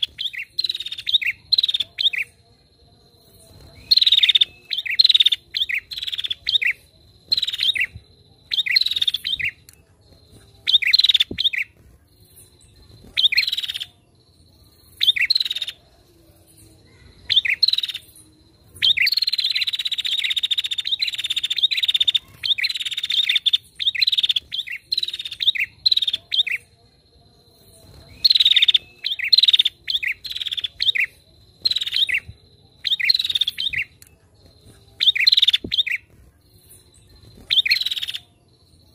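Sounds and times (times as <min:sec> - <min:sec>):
bird chirping rapidly: 0:03.8 - 0:13.9, 0:18.8 - 0:26.7, 0:28.0 - 0:38.3.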